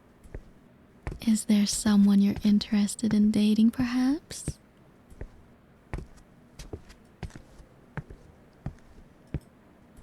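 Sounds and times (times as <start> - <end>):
footsteps on a hard floor: 0.3 - 4.6, 5.2 - 5.4, 6.0 - 9.0.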